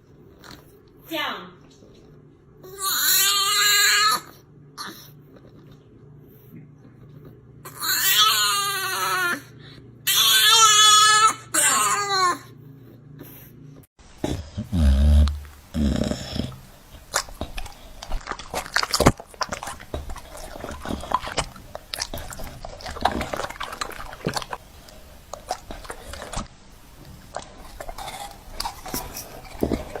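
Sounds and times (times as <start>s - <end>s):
dog chewing and gnawing: 14.3s - 30.0s.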